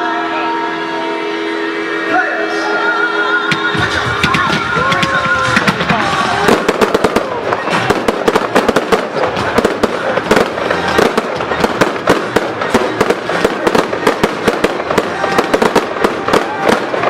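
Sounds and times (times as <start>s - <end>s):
fireworks bangs and crackles: 3.5s - 17.0s.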